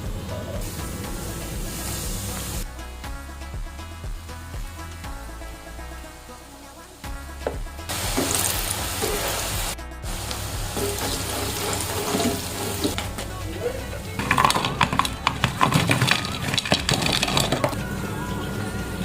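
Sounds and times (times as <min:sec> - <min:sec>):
background music: 0:00.0 - 0:19.0
batter sizzling in hot oil: 0:00.6 - 0:02.7, 0:07.9 - 0:13.2
sharp crackles: 0:07.9 - 0:17.8.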